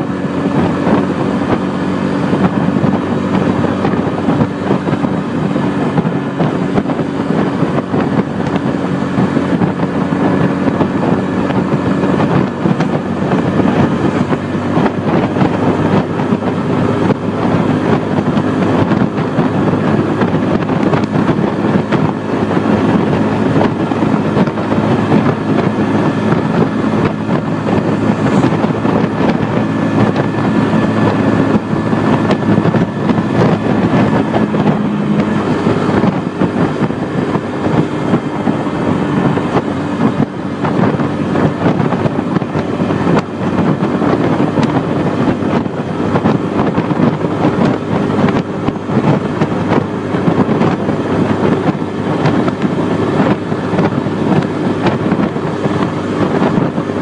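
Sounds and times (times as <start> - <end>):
motorcycle engine running: 0.0 - 57.0
wind noise on microphone: 0.0 - 57.0.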